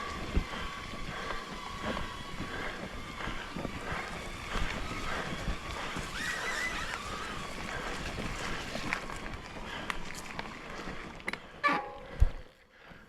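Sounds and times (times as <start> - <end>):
bike rattling on rough trail: 0.0 - 13.0
high wavering squeal: 11.6 - 12.2.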